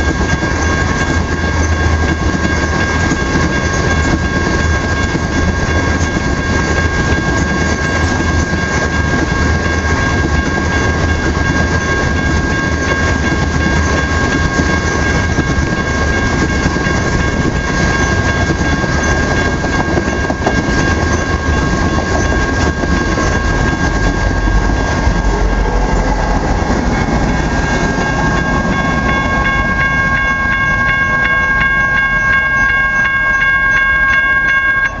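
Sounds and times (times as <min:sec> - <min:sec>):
high-pitched ringing tone: 0:00.0 - 0:35.0
train cars rumbling on rails: 0:00.0 - 0:35.0.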